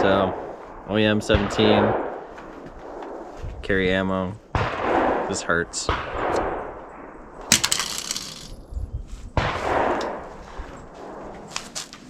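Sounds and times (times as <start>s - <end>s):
pistol shots with echo: 4.5s - 6.8s.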